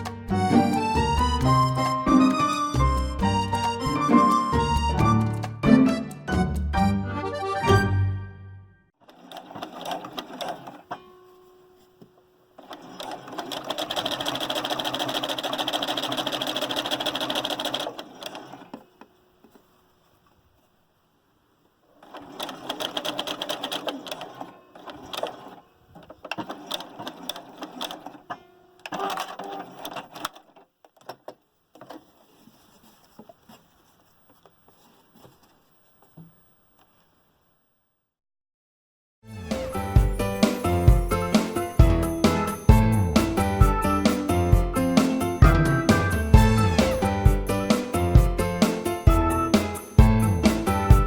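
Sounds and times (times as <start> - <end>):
sewing machine stitching: 9.0 - 11.0, 12.6 - 19.0, 21.9 - 31.3.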